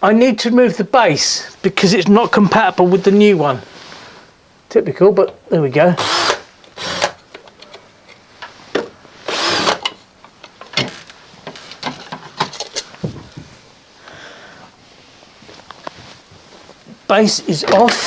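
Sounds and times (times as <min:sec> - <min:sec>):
rasping burst: 0:06.0 - 0:07.2, 0:09.3 - 0:09.8.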